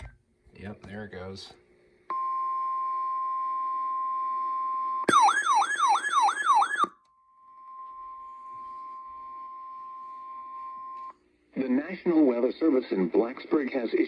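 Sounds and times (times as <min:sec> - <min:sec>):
steady warning tone: 0:05.1 - 0:06.9
electronic warbling alarm: 0:05.1 - 0:07.0.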